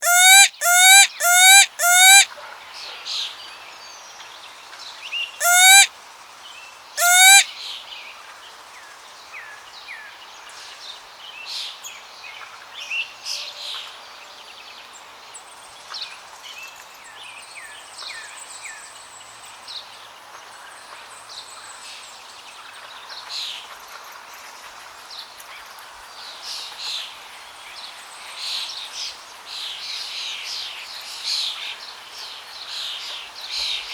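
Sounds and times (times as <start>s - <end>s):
small birds chirping: 0.0s - 2.2s, 5.4s - 5.9s, 7.0s - 7.4s
peacock calling: 0.0s - 2.3s, 5.4s - 5.9s, 7.0s - 7.4s.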